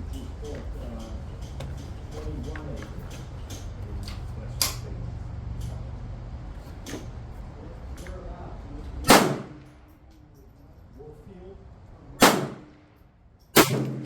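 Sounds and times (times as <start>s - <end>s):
rifle shot: 9.1s - 9.7s, 12.2s - 12.8s, 13.6s - 14.0s.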